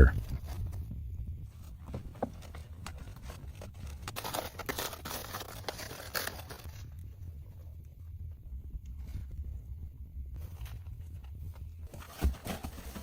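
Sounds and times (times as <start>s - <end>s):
steady low rumble: 0.0s - 4.9s, 6.4s - 12.0s
scraping and tearing handling noises: 1.5s - 7.1s, 10.4s - 13.0s.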